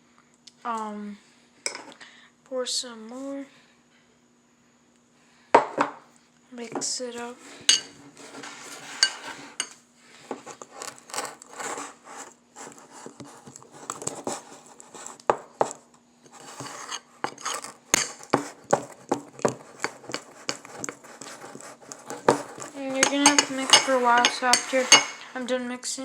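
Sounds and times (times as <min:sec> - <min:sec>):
utensil scraping a bowl: 0:07.2 - 0:09.8, 0:10.4 - 0:25.5.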